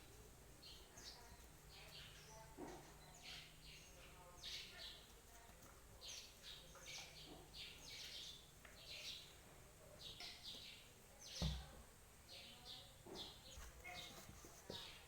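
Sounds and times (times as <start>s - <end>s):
small birds chirping: 0.0s - 15.0s
thump: 11.4s - 11.7s.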